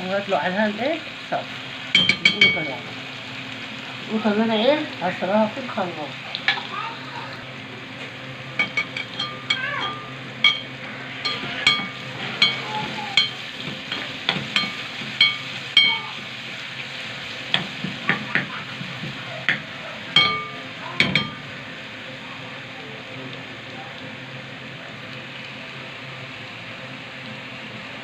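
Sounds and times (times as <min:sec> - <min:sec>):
sauce sizzling: 0:00.0 - 0:28.0
spoon clinking against metal pot: 0:02.0 - 0:02.8, 0:08.6 - 0:16.1, 0:20.2 - 0:21.5.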